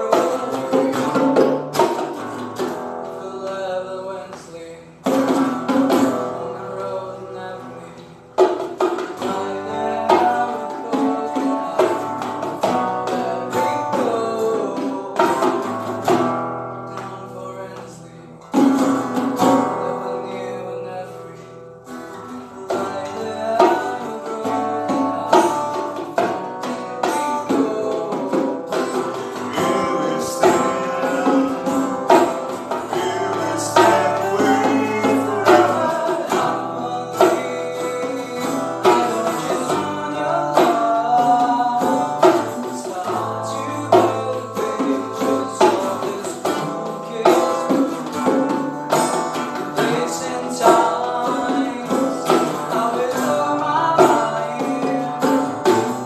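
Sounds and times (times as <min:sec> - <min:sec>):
guitar-led band music: 0:00.0 - 0:56.0.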